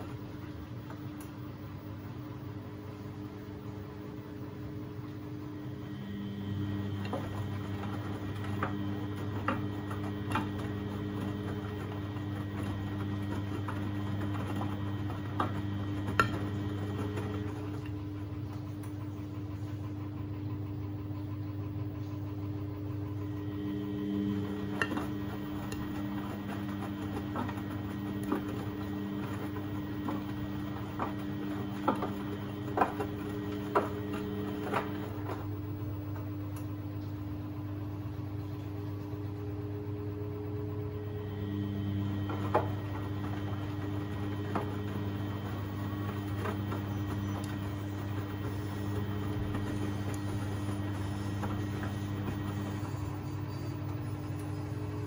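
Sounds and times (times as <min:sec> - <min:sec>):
washing machine motor hum: 0:00.0 - 0:55.0.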